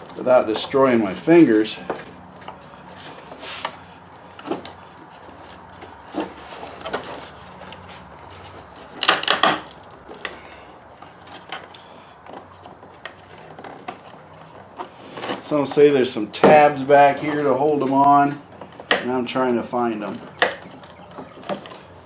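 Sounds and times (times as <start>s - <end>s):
plastic clicks and creaks: 8.8s - 15.8s, 20.0s - 22.0s.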